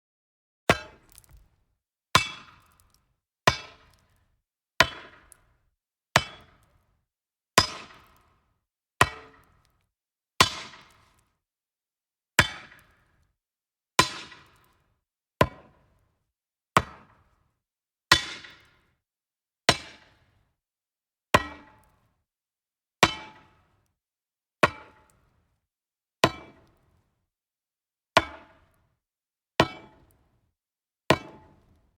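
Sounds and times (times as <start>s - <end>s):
metal rod striking wood: 0.7s - 1.4s.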